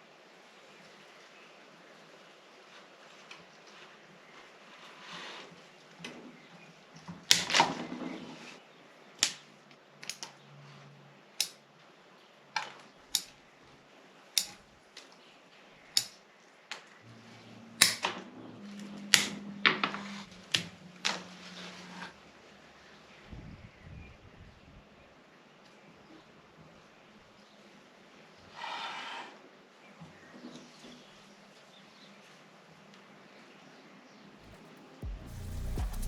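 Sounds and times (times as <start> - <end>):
pruning shears snipping: 34.5 - 36.0.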